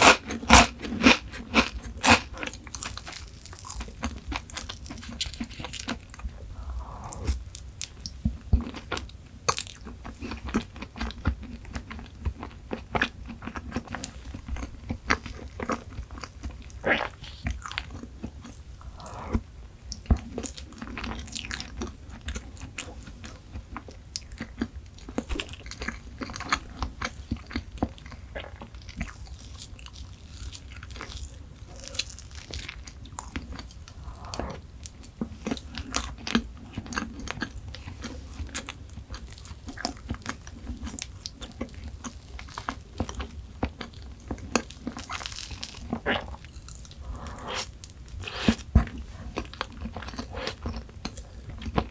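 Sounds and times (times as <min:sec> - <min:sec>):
person chewing chocolate: 0:00.0 - 0:51.9
wet mouth clicks: 0:46.0 - 0:48.6.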